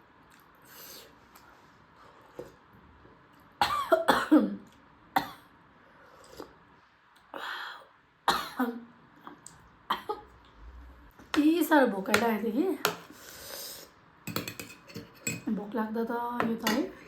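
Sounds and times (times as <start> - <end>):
woman coughing: 3.6 - 4.6, 8.3 - 8.8.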